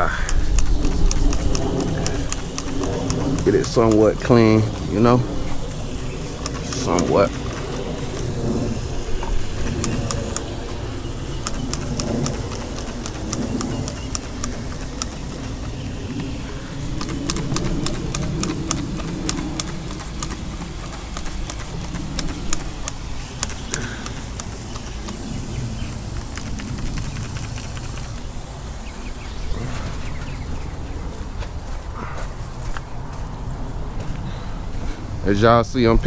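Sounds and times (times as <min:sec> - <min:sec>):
trigger sprayer clicking: 0:00.0 - 0:29.5
steady low rumble: 0:00.0 - 0:36.0.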